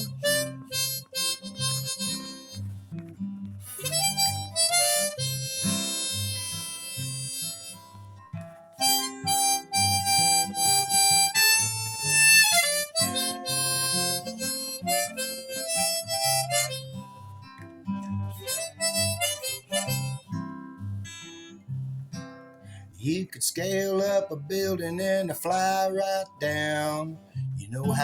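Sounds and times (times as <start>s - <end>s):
harmonica solo: 0.0s - 2.7s, 3.6s - 8.2s, 8.8s - 17.3s, 18.3s - 20.4s
strummed acoustic guitar: 0.0s - 28.0s.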